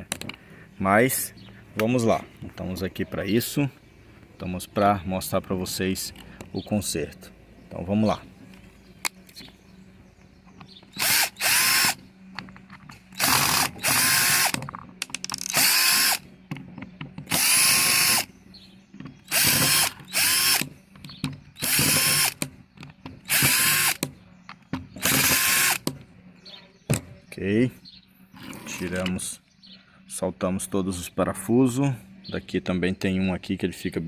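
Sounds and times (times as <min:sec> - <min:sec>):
electric screwdriver spinning: 0:10.9 - 0:12.0, 0:13.2 - 0:14.6, 0:15.4 - 0:16.2, 0:17.3 - 0:18.3, 0:19.3 - 0:20.7, 0:21.6 - 0:22.4, 0:23.3 - 0:24.0, 0:25.0 - 0:25.8.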